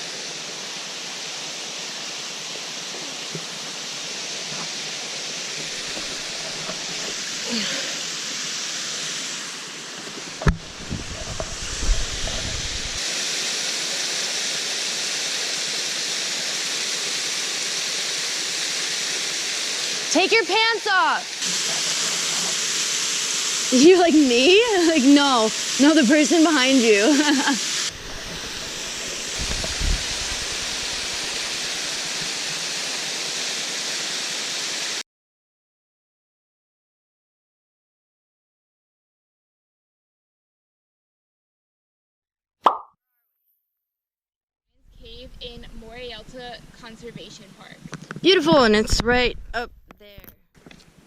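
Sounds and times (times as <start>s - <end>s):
waterfall rushing: 0.0s - 35.0s
low rumbling bumps: 10.5s - 13.0s, 27.9s - 31.4s, 48.6s - 49.9s.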